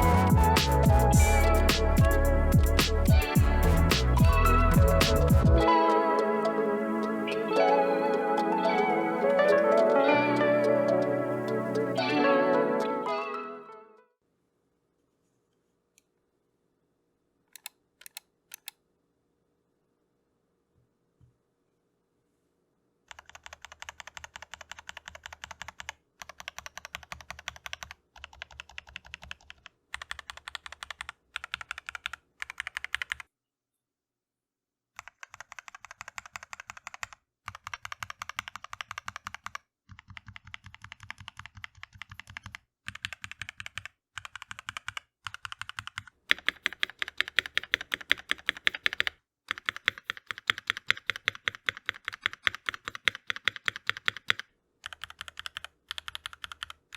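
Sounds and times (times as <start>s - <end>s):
fast typing on mechanical keyboard: 23.1s - 33.3s, 35.0s - 56.9s.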